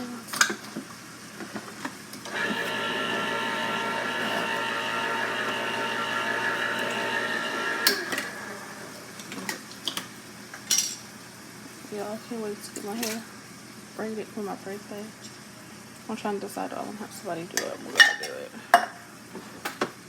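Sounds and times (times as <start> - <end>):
electric can opener motor: 2.2 - 9.4.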